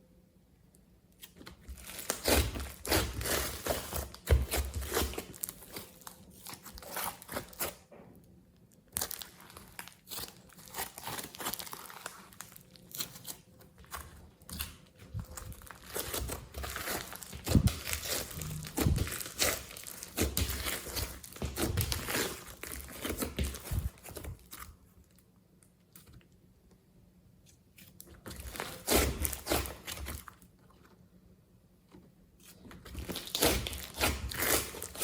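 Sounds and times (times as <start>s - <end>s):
slime squelching and crackling: 8.8s - 24.7s, 32.4s - 35.0s.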